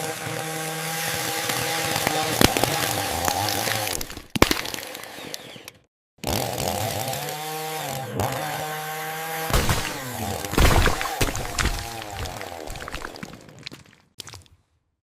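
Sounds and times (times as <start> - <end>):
chainsaw engine running: 0.0 - 3.9, 6.2 - 13.0
cutting noise: 0.0 - 13.4.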